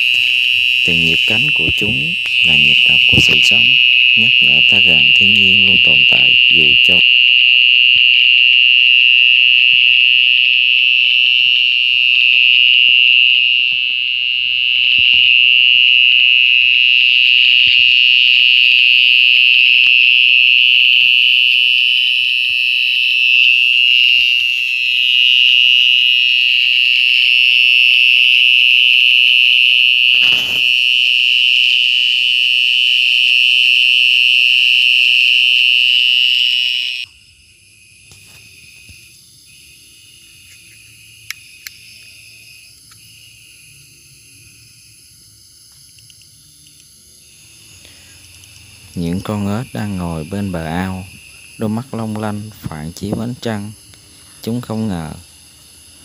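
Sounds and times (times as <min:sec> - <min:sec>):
crickets trilling: 0:00.0 - 0:56.0.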